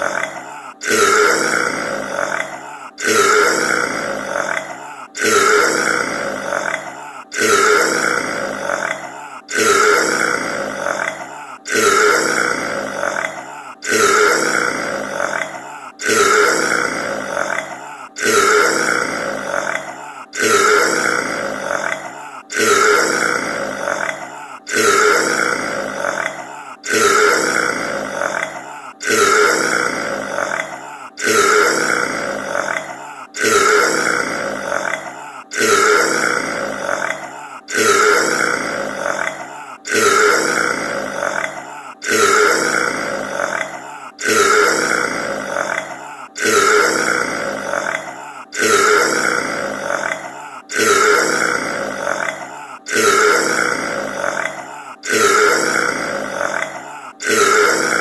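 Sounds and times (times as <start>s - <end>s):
man burping: 0.0s - 58.0s.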